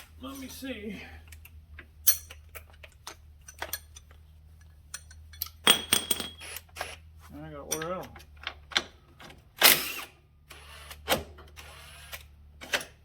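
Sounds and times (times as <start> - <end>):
metal tools clinking: 2.0 - 2.4, 4.9 - 6.5.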